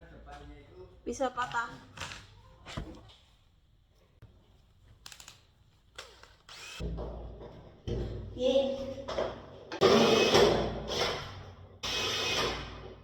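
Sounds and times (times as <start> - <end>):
power drill running: 6.5 - 6.8, 11.8 - 12.7.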